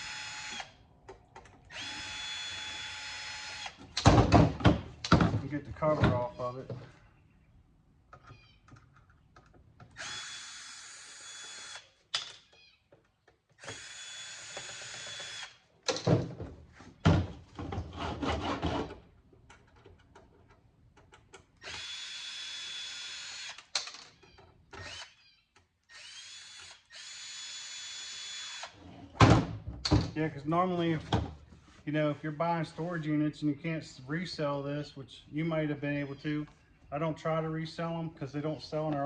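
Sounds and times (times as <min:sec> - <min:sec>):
power drill whining: 0:00.0 - 0:00.8, 0:01.7 - 0:03.9, 0:09.9 - 0:11.9, 0:13.6 - 0:15.6, 0:21.6 - 0:28.8.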